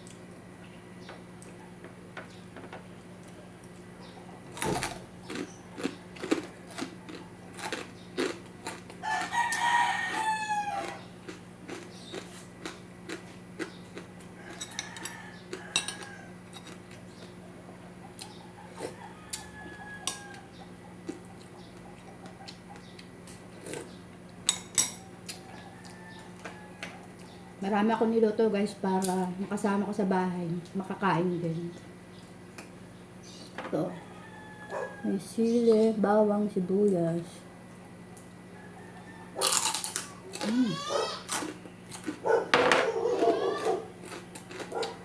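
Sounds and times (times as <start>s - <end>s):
rooster crowing: 9.0s - 11.1s, 14.3s - 16.5s, 18.4s - 20.9s, 25.0s - 27.6s, 33.8s - 35.2s, 38.5s - 41.2s, 42.2s - 44.0s.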